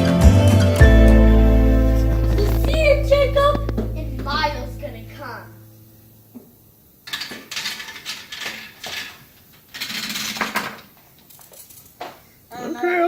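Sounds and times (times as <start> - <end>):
marble clattering down marble run: 7.1 - 10.9.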